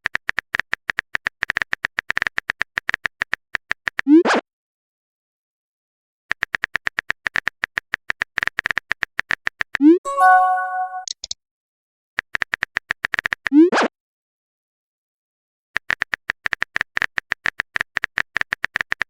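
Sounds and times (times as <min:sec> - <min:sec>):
phone keyboard typing clicks: 0:06.3 - 0:11.4
message sent whoosh: 0:10.1 - 0:11.1
chiming notification chord: 0:10.1 - 0:11.2.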